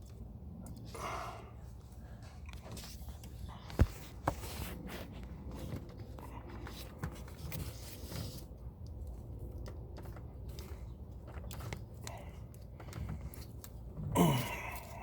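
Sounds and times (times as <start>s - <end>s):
rubbing of plastic and rubber parts: 2.5s - 14.0s.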